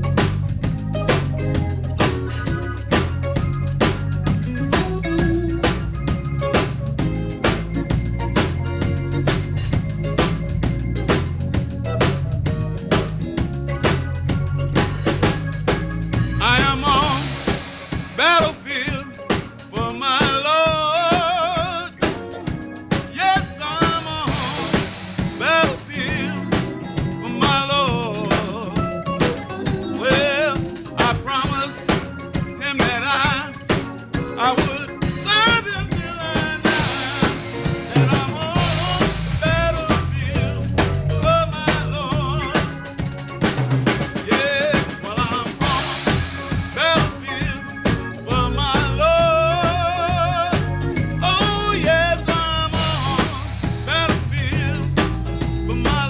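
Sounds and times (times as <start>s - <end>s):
bass line: 0.0s - 56.0s
drum kit: 0.0s - 56.0s
gospel band playing: 0.0s - 56.0s
wavering lead melody: 0.0s - 56.0s.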